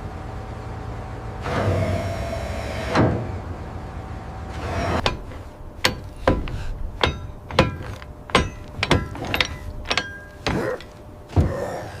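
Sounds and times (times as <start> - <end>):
metal being struck: 5.0 - 10.9.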